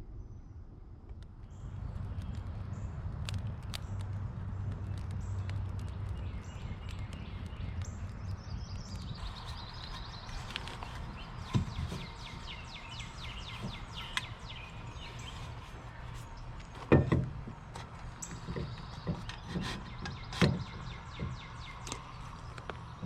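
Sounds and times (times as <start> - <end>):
birds chirping: 1.4 - 23.0
sharp knocks: 16.8 - 17.6.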